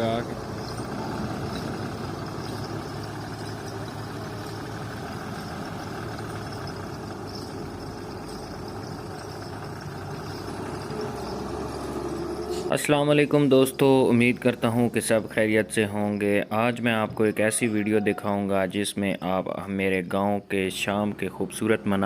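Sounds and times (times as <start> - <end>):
heavy diesel engine running: 0.0 - 17.2.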